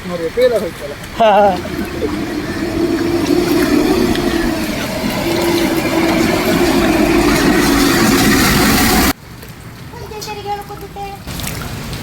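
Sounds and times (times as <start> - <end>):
heavy rain hissing: 1.3 - 9.1.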